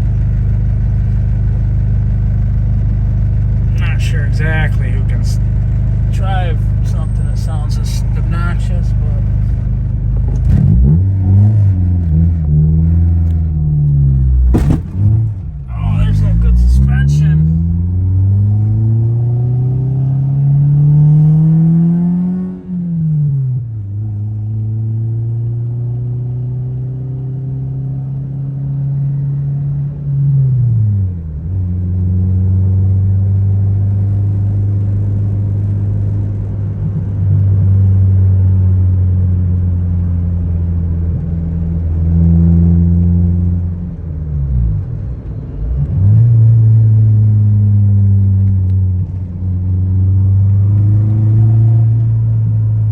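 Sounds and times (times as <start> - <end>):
car engine accelerating through gears: 3.6 - 52.9
exhaust rattling against frame: 14.3 - 15.6.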